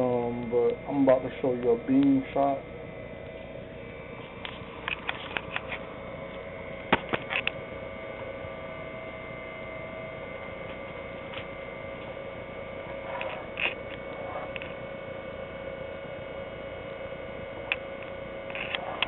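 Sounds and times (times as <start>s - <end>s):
power supplies humming: 0.0s - 19.0s
sharp clicks and knocks: 6.9s - 7.6s.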